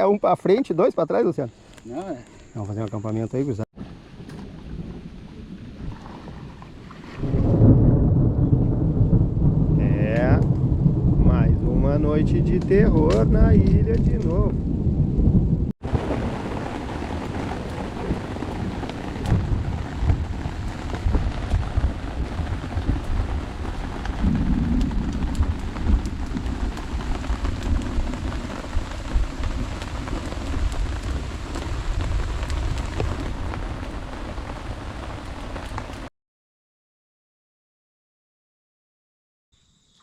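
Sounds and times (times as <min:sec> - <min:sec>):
low rumble of thunder: 0:04.1 - 0:36.1
heavy rain falling: 0:07.2 - 0:36.1.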